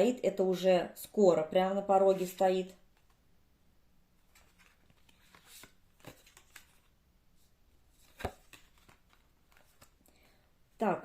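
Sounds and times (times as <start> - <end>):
cards rustling: 4.2 - 10.5.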